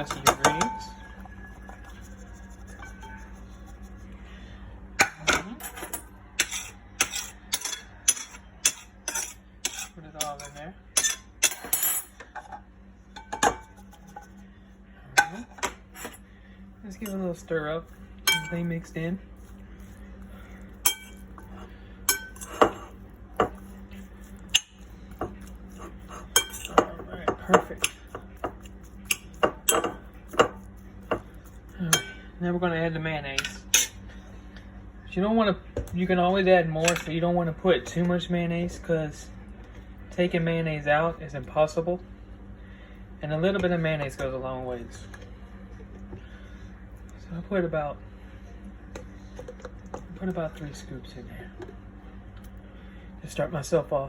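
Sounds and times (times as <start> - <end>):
utensil clinking against a bowl: 0.0 - 3.8, 5.0 - 12.4, 16.9 - 17.5, 18.2 - 32.3
low steady hum: 0.0 - 54.0
spoon clinking against bowl: 18.3 - 18.7, 20.8 - 23.7, 26.1 - 31.2.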